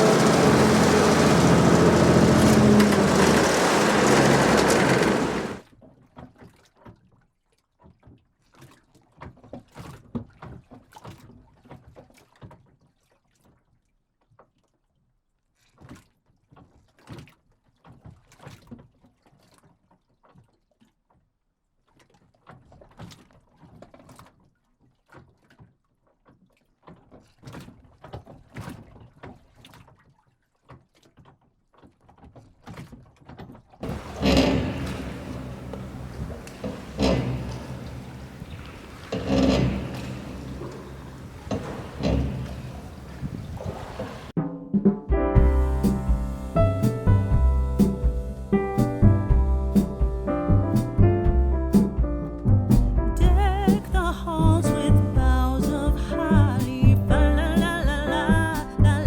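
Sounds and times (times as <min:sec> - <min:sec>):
boat engine running: 0:00.0 - 0:05.6, 0:33.8 - 0:44.3, 0:45.4 - 0:59.0
water splashes: 0:00.0 - 0:05.6, 0:33.8 - 0:44.4
light knocks on boat: 0:33.8 - 0:44.3.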